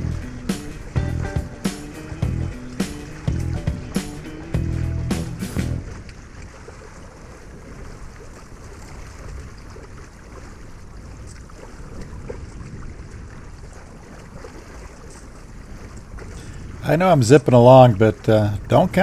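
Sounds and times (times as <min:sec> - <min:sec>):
water rushing along hull: 0:00.0 - 0:19.0
wind buffeting microphone: 0:11.9 - 0:13.8.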